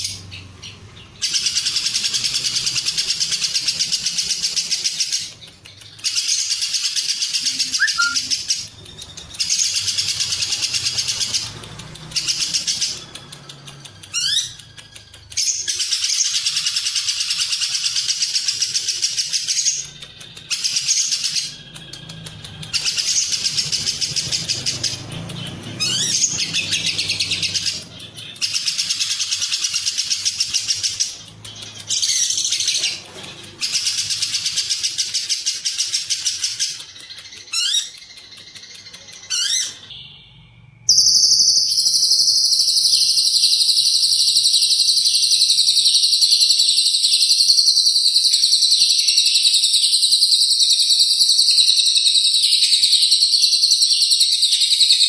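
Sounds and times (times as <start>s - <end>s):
bird rising whistles: 7.6s - 8.4s.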